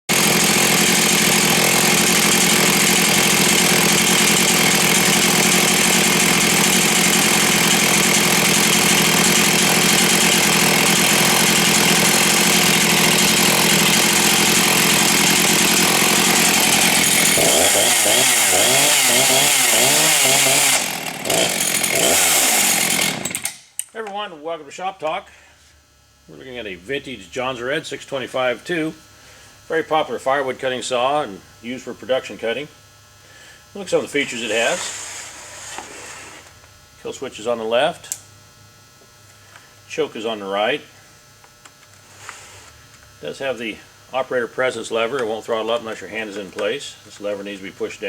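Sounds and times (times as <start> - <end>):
chainsaw running at high speed: 0.1 - 23.7, 33.6 - 35.0, 43.3 - 48.0.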